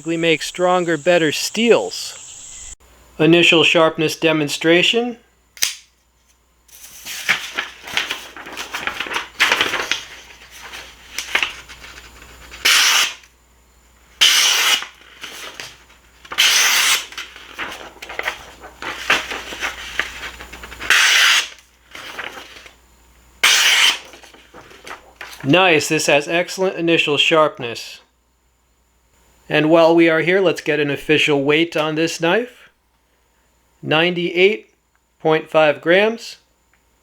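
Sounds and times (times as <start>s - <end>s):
material rustling: 17.4s - 20.8s.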